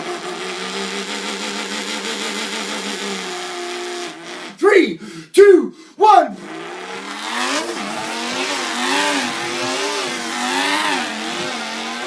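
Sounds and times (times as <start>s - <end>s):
man imitating engine revving: 0.0s - 12.0s.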